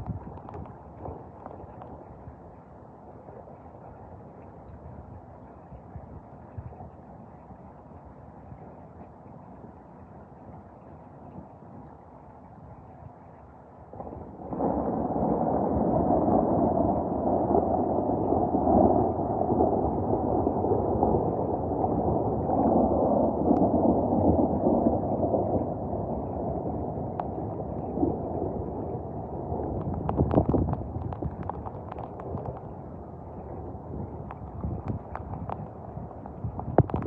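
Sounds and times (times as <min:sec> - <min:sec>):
thunder rumbling: 0:13.8 - 0:37.0.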